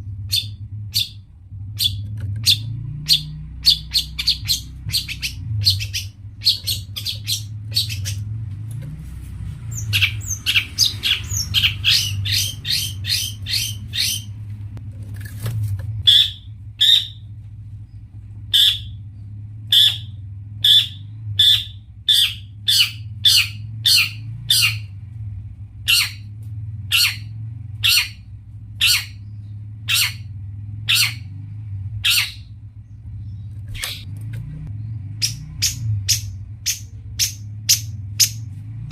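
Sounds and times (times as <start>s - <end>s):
steady low hum: 0.0s - 38.9s
shrike calling: 1.8s - 8.2s, 9.7s - 14.4s, 16.0s - 17.3s, 18.5s - 19.0s, 19.7s - 24.9s.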